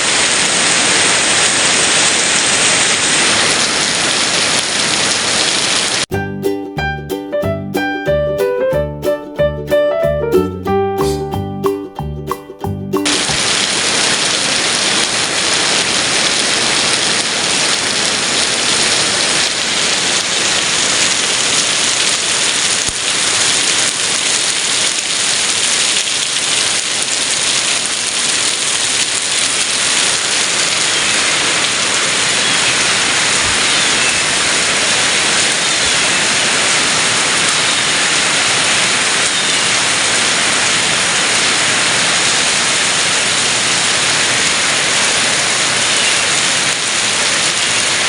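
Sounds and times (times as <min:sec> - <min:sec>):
heavy rain pouring: 0:00.0 - 0:06.2, 0:12.5 - 0:48.0.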